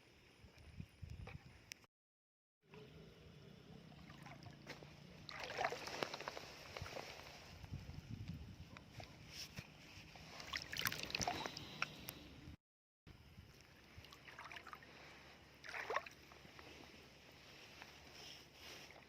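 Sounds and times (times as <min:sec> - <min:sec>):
seawater sloshing: 0:03.8 - 0:07.5, 0:10.4 - 0:11.7, 0:14.1 - 0:16.8.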